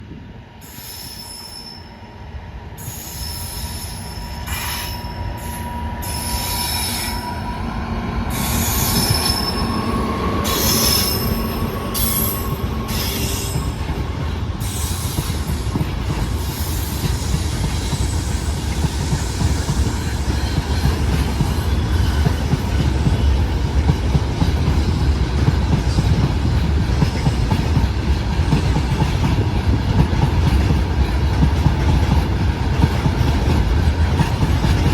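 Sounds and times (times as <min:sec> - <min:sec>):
rolling train rumble: 0:00.0 - 0:34.9
train wheels screeching on rails: 0:00.6 - 0:34.9.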